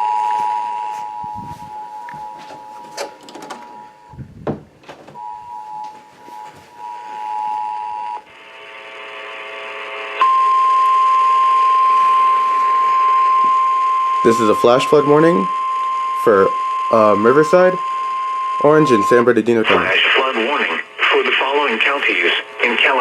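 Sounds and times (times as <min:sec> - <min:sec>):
steady warning alarm tone: 0:00.0 - 0:04.4, 0:05.1 - 0:20.8
buzzy hum with static: 0:03.7 - 0:23.0
two-tone attention signal: 0:10.2 - 0:19.9.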